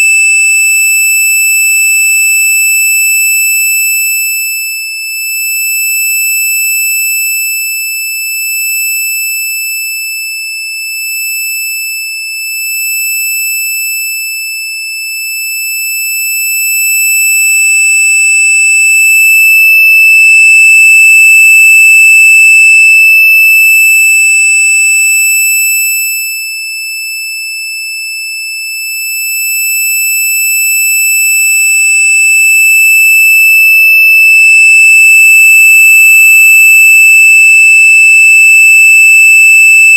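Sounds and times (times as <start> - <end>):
piercing high-pitched electronic tone: 18.1 - 24.8, 31.5 - 39.9.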